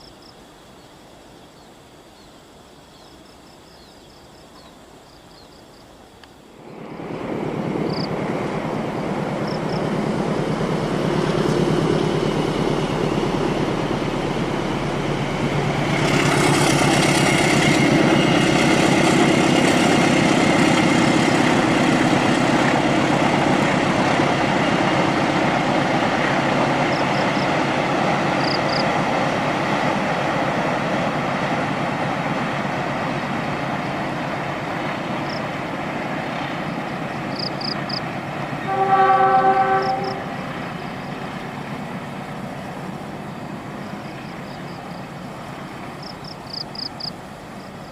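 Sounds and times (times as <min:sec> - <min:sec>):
train wheels rumbling on rails: 0:06.6 - 0:47.9.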